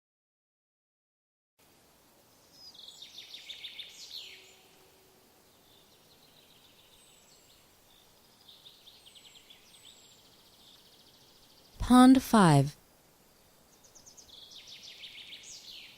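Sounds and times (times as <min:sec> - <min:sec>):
steady background hiss: 0:01.6 - 0:15.9
songbirds trilling: 0:02.4 - 0:04.8, 0:05.4 - 0:11.8, 0:13.6 - 0:15.9.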